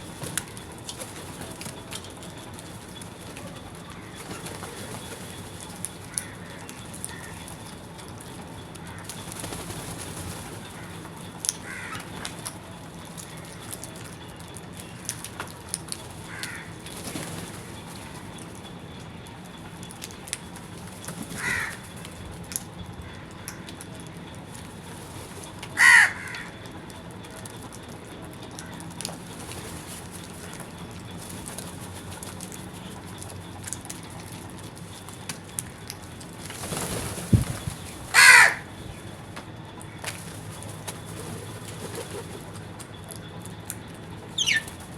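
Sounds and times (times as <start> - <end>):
crows cawing: 6.0 - 7.6, 8.7 - 9.3, 10.6 - 12.3, 16.2 - 17.0, 21.2 - 22.0, 22.9 - 24.1, 25.7 - 26.7, 28.6 - 29.0, 38.1 - 38.8.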